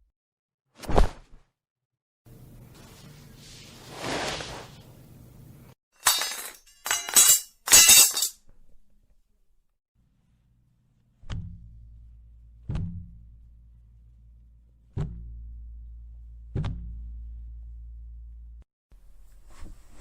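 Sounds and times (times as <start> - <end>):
glass crash: 6.0 - 8.3
low steady hum: 10.1 - 20.0.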